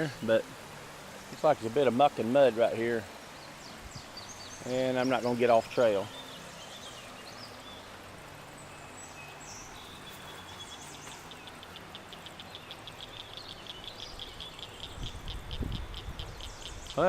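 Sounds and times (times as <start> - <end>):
creek water over rocks: 0.0 - 17.0.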